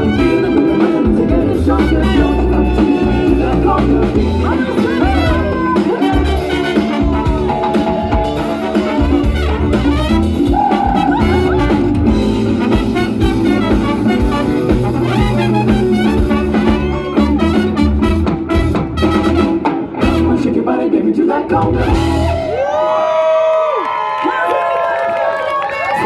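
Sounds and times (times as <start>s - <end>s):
drums: 0.0s - 20.7s, 21.5s - 24.5s
horns: 0.0s - 20.8s
latin dance band playing: 0.0s - 23.4s.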